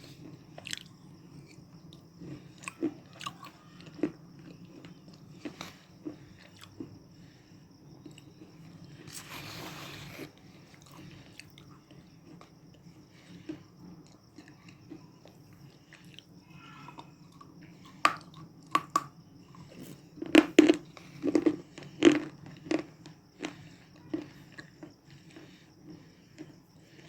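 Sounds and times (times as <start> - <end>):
soft chewing: 0.0 - 27.0
person crunching brittle chips: 19.6 - 25.6.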